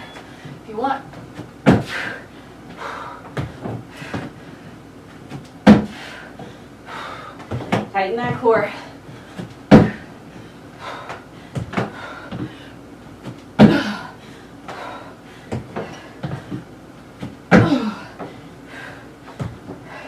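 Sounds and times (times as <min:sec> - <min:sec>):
feet thudding on box: 0:01.3 - 0:02.2, 0:03.3 - 0:04.4, 0:05.3 - 0:06.5, 0:09.3 - 0:10.1, 0:11.1 - 0:12.6, 0:13.2 - 0:14.1, 0:14.7 - 0:18.4, 0:19.3 - 0:19.8
knocks of stepping down: 0:09.4 - 0:10.0.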